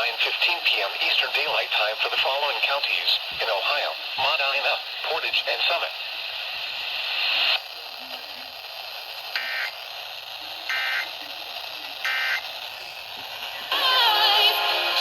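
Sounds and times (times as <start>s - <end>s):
static hiss: 0.0s - 15.0s
warbling data tone bursts: 9.4s - 9.8s, 10.7s - 11.1s, 12.0s - 13.7s.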